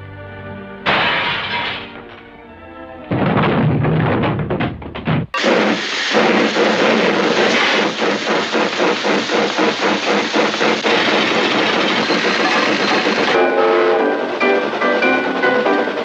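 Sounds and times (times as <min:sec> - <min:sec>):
cartoon machine engine running: 0:05.4 - 0:13.5.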